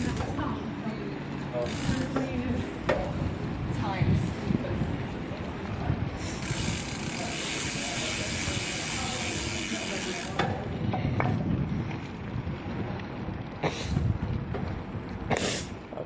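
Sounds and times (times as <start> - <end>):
bike freewheel ratchet whirr: 0.0 - 0.4, 1.5 - 2.7, 6.1 - 10.6
tyres and wind rumble: 0.0 - 16.0.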